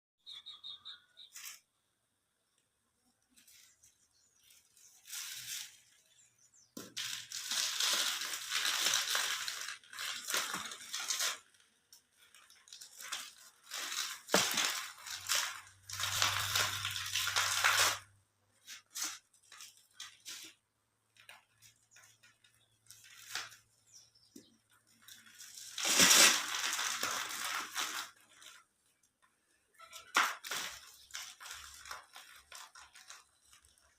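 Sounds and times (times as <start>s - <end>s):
cement cubes crunching: 6.6s - 20.6s, 24.8s - 28.8s, 29.7s - 33.9s.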